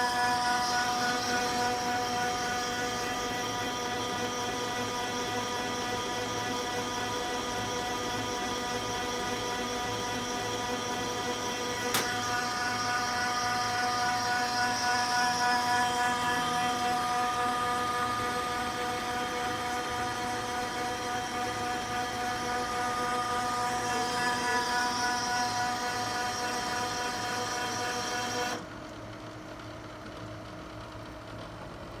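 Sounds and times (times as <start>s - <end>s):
printer whine: 0.0s - 28.8s
printer click: 11.9s - 12.4s.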